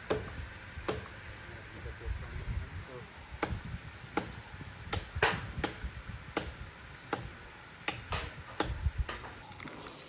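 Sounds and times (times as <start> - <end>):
hand tool striking wood: 6.4 - 9.3.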